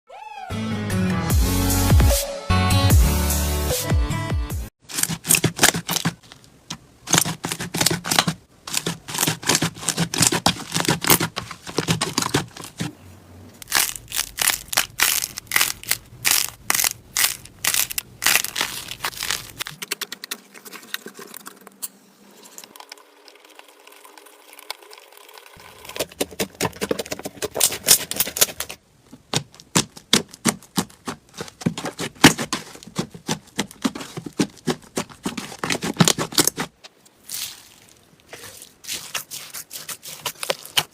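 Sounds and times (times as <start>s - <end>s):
slime squeezed by hand: 35.4s - 40.9s.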